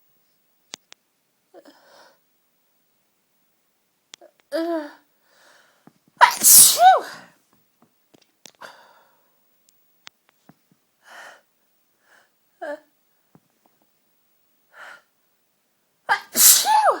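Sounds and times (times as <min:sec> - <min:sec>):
person breathing: 0:05.2 - 0:05.9, 0:08.6 - 0:09.4, 0:11.0 - 0:12.4
person sneezing: 0:06.2 - 0:07.3, 0:16.1 - 0:17.0.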